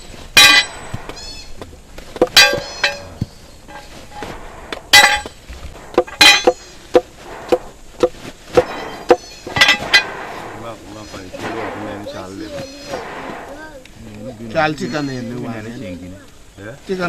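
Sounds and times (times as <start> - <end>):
hammer striking metal: 0.4 - 1.0, 2.2 - 3.9, 4.7 - 7.7.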